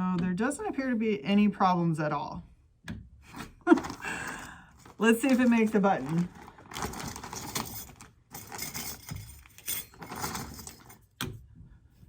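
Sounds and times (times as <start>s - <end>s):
small metal parts clinking: 4.8s - 11.1s.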